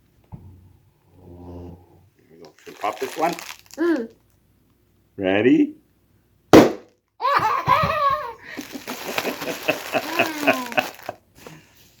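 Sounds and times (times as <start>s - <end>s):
packing bubble popping: 2.5s - 4.1s
child squealing: 7.2s - 8.4s, 10.0s - 11.0s
child giggling: 7.2s - 11.2s.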